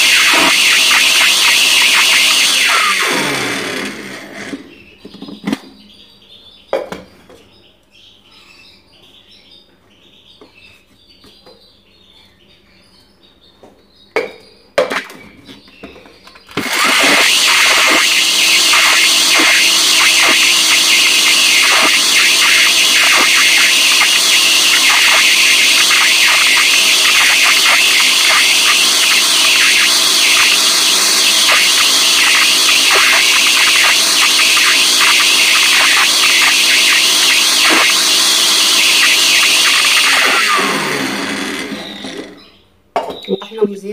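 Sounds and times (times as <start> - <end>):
electric grinder motor: 0.0 - 4.7, 16.6 - 42.4
motor winding down whine: 0.0 - 4.7, 16.6 - 42.4.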